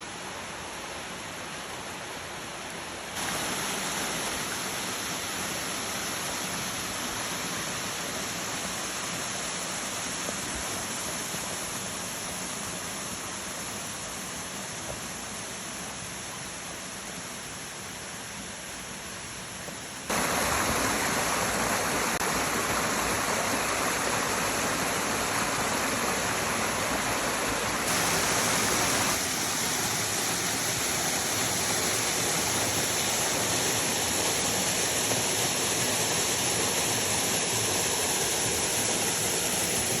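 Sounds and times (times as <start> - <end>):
waterfall rushing: 0.0 - 15.4, 20.1 - 40.0.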